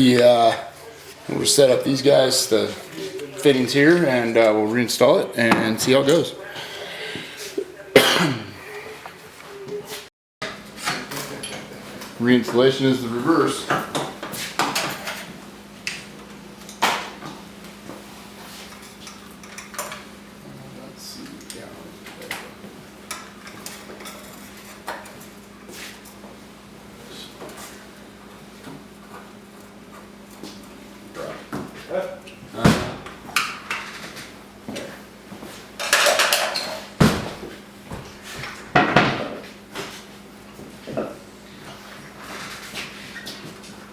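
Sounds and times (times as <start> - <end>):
clicks and knocks of tools and parts: 35.8 - 36.8.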